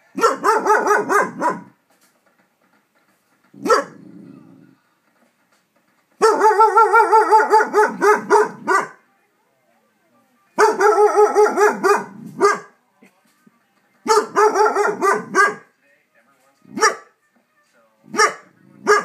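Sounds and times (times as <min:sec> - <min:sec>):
big dog barking: 0:00.2 - 0:01.8, 0:03.6 - 0:04.2, 0:06.2 - 0:09.0, 0:10.6 - 0:12.7, 0:14.1 - 0:15.7, 0:16.7 - 0:17.1, 0:18.1 - 0:19.0.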